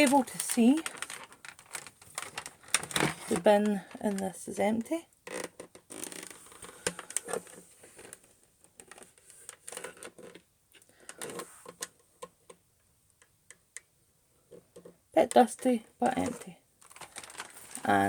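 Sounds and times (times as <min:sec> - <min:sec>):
plastic dust bin clicks and rattling: 0:00.0 - 0:04.3.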